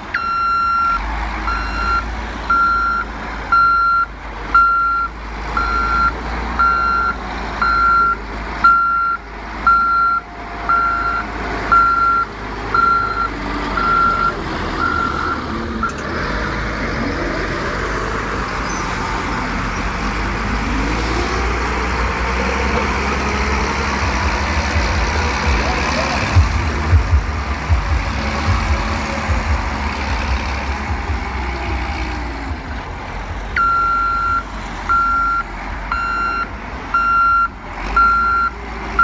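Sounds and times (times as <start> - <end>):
low diesel engine drone: 0.0 - 39.0
reversing alarm beeping: 0.1 - 16.1, 33.6 - 39.0
steady machine noise: 21.5 - 33.6.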